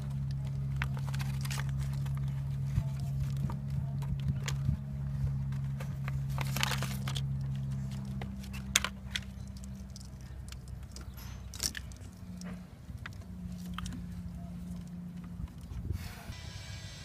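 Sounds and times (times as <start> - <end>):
wires crinkling and rustling: 0.0 - 15.9
steady low hum: 0.0 - 17.0
connectors clicking: 6.0 - 15.7.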